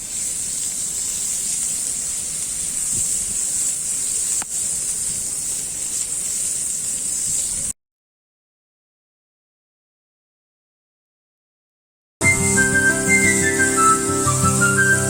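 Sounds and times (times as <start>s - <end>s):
meat sizzling on a griddle: 0.0s - 7.8s, 12.4s - 15.0s.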